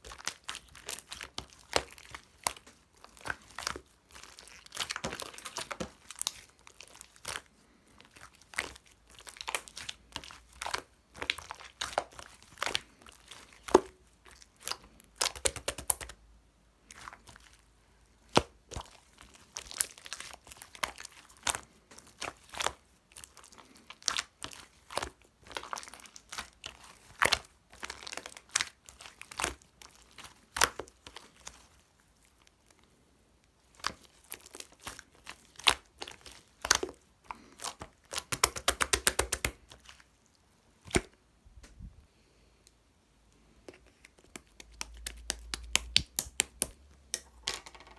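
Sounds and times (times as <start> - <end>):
slime squishing and popping: 0.0 - 7.5, 8.1 - 16.2, 33.7 - 40.0, 40.8 - 41.2, 43.9 - 47.5.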